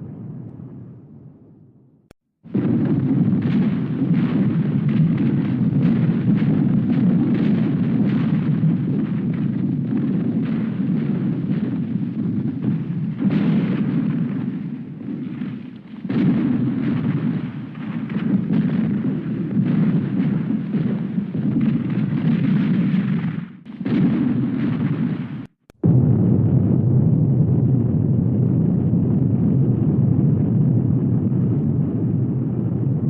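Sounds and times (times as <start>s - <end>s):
explosions: 0.0s - 33.0s
gunfire: 2.5s - 26.0s
heavy low rumble: 25.8s - 33.0s.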